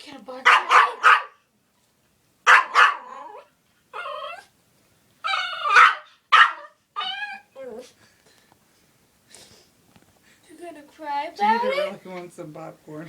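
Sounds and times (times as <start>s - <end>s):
dog barking: 0.4s - 1.5s, 2.4s - 3.5s, 5.5s - 6.8s
dog whining: 3.0s - 4.6s, 5.2s - 8.0s.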